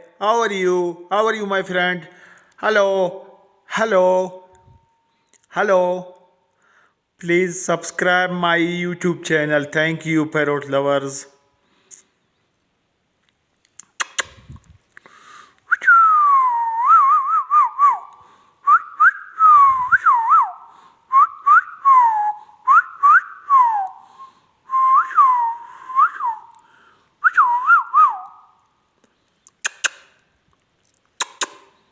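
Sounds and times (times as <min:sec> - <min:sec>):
sharp bird clicks: 0:13.7 - 0:14.6, 0:29.4 - 0:30.2, 0:31.2 - 0:31.8.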